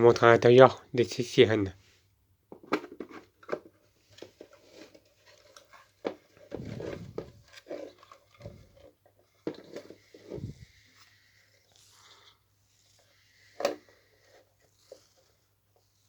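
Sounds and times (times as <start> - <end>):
rustling: 4.0 - 16.0.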